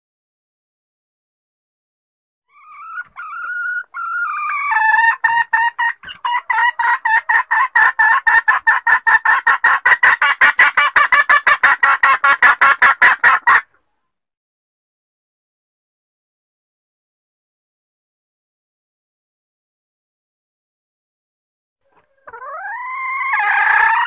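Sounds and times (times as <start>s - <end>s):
hen clucking rapidly: 2.5s - 13.7s, 21.9s - 24.0s.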